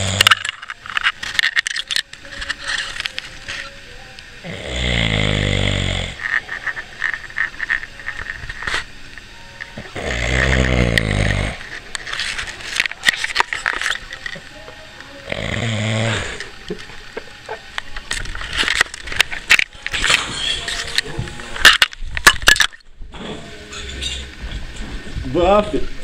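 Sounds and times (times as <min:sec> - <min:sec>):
man snoring loudly: 0:00.0 - 0:00.4, 0:04.4 - 0:06.2, 0:09.9 - 0:11.6, 0:15.3 - 0:16.5.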